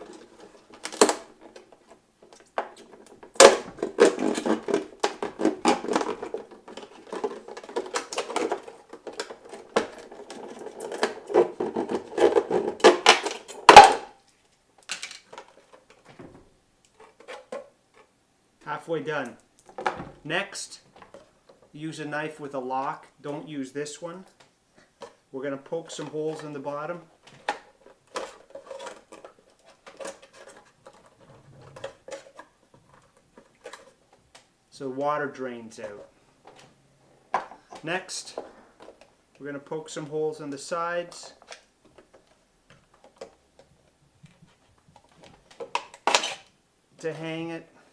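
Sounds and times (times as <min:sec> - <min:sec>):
sharp crack: 0:03.3 - 0:06.0, 0:12.8 - 0:14.2.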